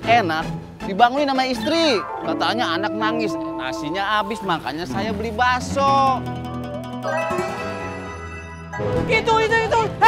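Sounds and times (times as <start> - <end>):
music of sustained notes: 1.6 - 8.9.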